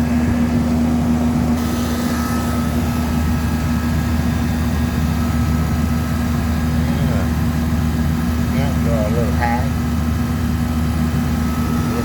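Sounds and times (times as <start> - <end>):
air conditioner unit humming: 0.0 - 12.0.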